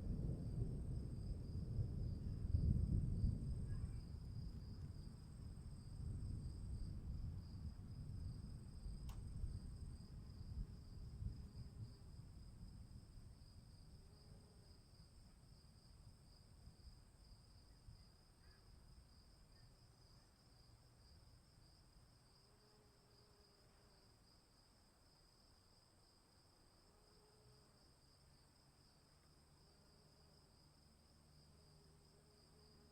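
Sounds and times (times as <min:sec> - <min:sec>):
distant thunder rumbling: 0:00.0 - 0:10.1
insects chirring: 0:00.2 - 0:32.9.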